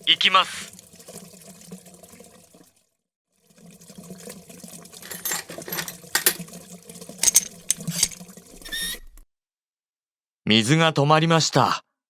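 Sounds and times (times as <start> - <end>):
toilet water running: 0.0 - 9.2
clicks and rattles of handling: 5.0 - 6.4, 7.2 - 8.2.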